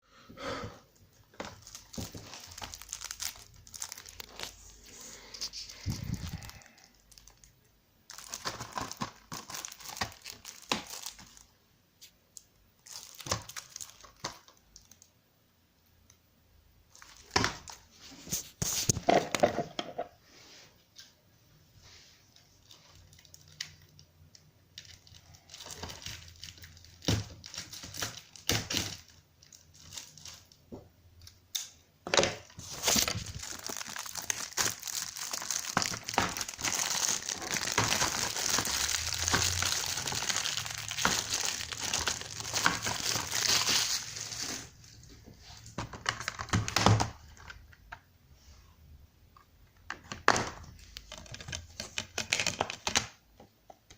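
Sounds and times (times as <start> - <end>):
plastic wrap crinkling: 1.1 - 15.1, 16.9 - 19.4, 22.4 - 31.7, 32.3 - 47.7, 50.0 - 53.2.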